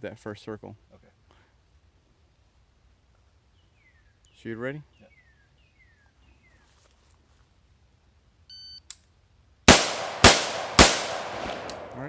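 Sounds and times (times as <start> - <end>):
rifle shots: 9.7 - 12.0.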